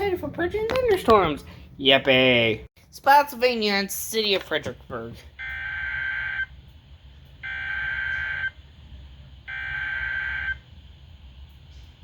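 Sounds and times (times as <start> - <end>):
electronic alert alarm beeping: 7.4 - 8.6, 9.5 - 10.6.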